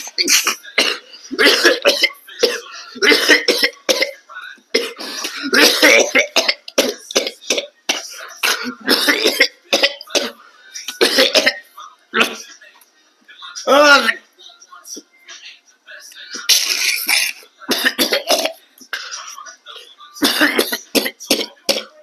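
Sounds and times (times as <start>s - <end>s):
person coughing: 0.0s - 4.2s, 4.8s - 10.4s, 11.0s - 11.6s, 16.5s - 19.4s, 20.2s - 22.0s.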